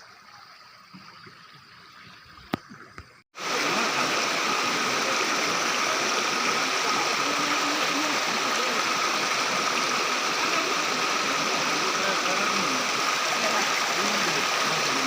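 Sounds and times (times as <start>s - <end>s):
waterfall rushing: 3.4s - 15.0s.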